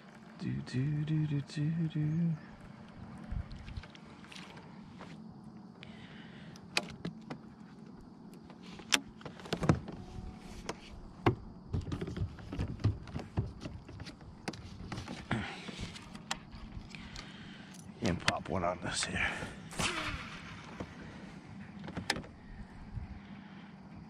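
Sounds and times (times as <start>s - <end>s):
loud thumps: 19.7s - 21.2s.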